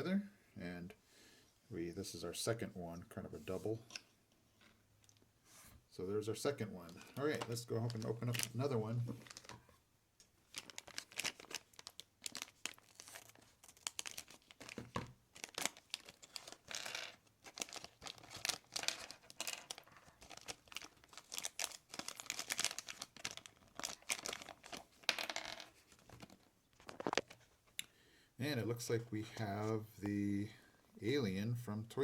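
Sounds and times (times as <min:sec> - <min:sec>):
plastic bag crinkling: 0:07.0 - 0:09.6, 0:10.5 - 0:25.1, 0:25.9 - 0:27.4.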